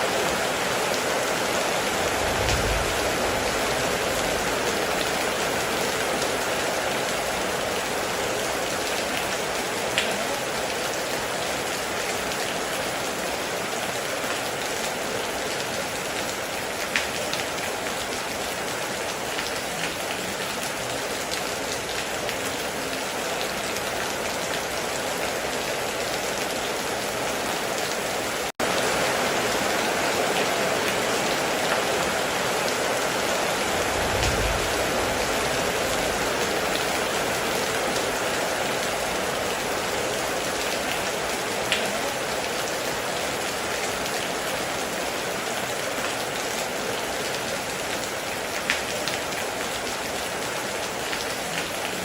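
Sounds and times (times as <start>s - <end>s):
heavy rain falling: 0.0s - 52.0s
short low thump: 2.0s - 4.8s, 33.8s - 36.3s.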